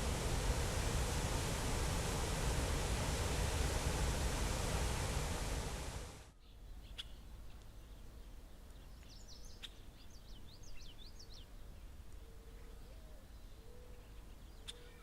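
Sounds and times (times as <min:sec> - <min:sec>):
loud rushing noise: 0:00.0 - 0:06.2
songbird chirping: 0:06.4 - 0:15.0.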